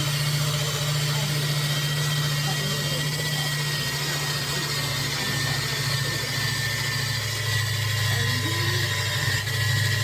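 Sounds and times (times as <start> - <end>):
low motor hum: 0.0 - 10.0.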